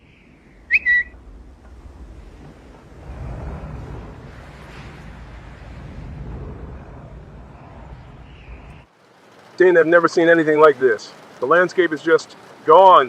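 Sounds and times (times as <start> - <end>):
strong wind roaring: 0.0 - 8.9.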